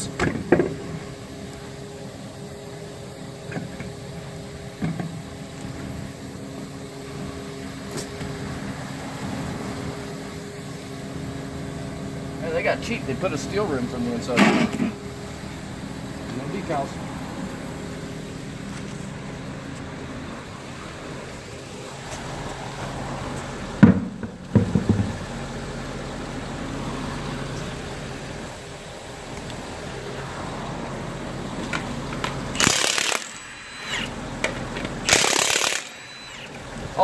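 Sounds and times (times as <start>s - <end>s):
truck engine idling: 0.0s - 37.0s
impact wrench hammering: 23.8s - 25.2s, 32.6s - 34.2s, 35.0s - 36.5s
metal knock and clatter: 23.8s - 25.2s.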